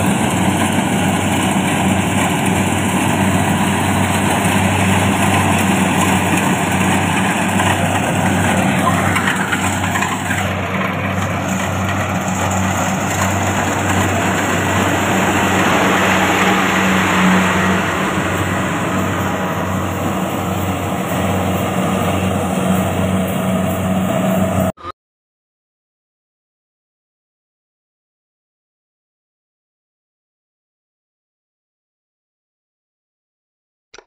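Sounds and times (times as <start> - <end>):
combine harvester engine hum: 0.0 - 24.9.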